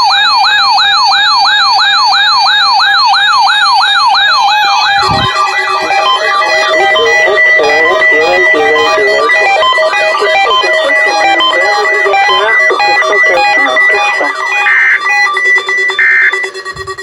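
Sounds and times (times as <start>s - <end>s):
music: 4.6s - 17.0s.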